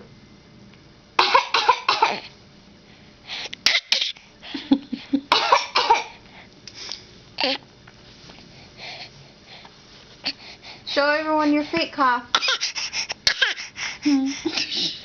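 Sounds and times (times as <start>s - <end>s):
person fake coughing: 5.3s - 6.1s.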